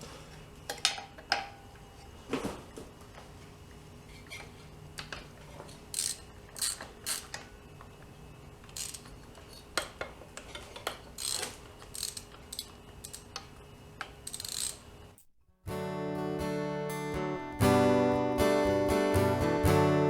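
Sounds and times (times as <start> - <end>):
ratchet wrench clicking: 5.7 - 7.5, 8.7 - 10.0, 10.8 - 14.9.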